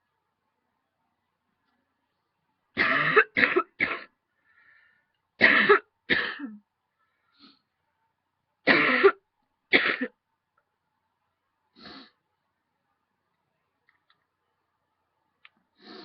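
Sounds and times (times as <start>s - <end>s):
woman coughing: 2.8s - 4.1s, 5.4s - 6.6s, 8.7s - 10.2s.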